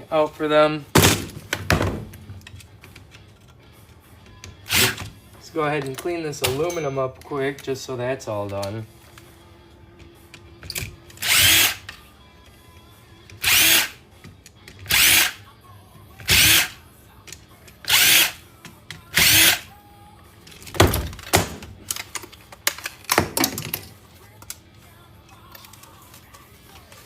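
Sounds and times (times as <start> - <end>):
power drill spinning: 4.6 - 5.1, 11.1 - 11.9, 13.4 - 14.0, 14.9 - 15.4, 16.2 - 16.8, 17.8 - 18.4, 19.1 - 19.7.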